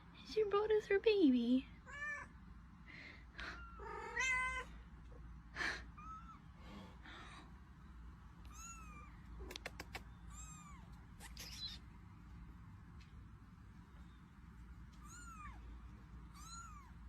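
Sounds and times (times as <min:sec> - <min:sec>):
cat meowing: 0:03.4 - 0:04.7, 0:08.5 - 0:09.5, 0:10.3 - 0:11.8, 0:15.0 - 0:15.6, 0:16.3 - 0:17.0
sharp clicks: 0:09.4 - 0:10.1.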